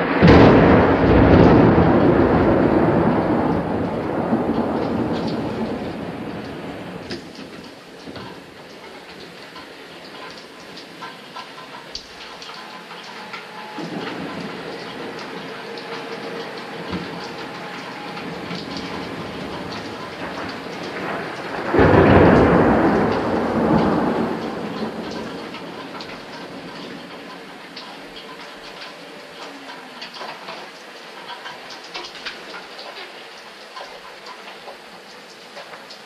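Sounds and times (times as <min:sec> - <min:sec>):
thunder clap rumbling: 0:00.0 - 0:11.5, 0:13.2 - 0:28.9
steady rain: 0:00.0 - 0:36.0.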